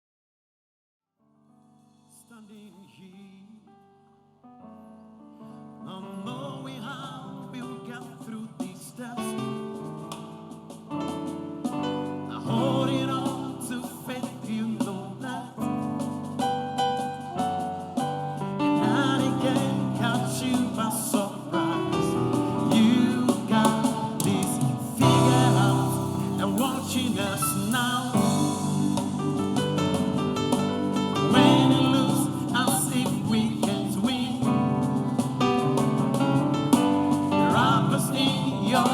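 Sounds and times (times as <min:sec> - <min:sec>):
gospel singing: 0:11.7 - 0:38.9
keyboard chords: 0:21.4 - 0:32.7.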